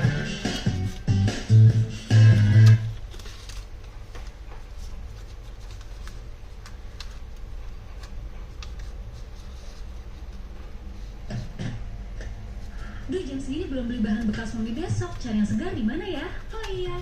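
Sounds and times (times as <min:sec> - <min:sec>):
guitar and bass music: 0:00.0 - 0:02.9
low steady hum: 0:00.0 - 0:17.0.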